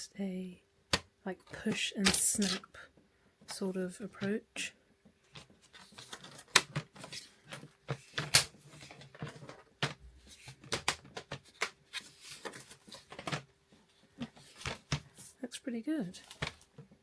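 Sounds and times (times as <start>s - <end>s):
plastic basket clicking: 0.9s - 2.6s, 6.1s - 11.8s
sharp plastic snaps: 0.9s - 2.6s.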